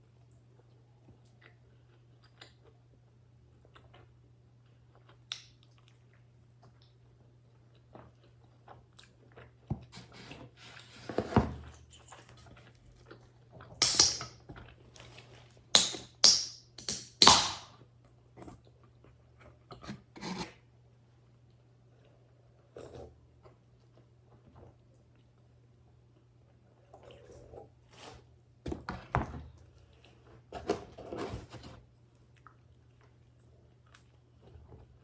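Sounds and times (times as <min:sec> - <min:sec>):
crunchy chewing of pizza crust: 0:00.0 - 0:11.0, 0:11.7 - 0:13.8, 0:21.4 - 0:28.4, 0:29.6 - 0:35.0.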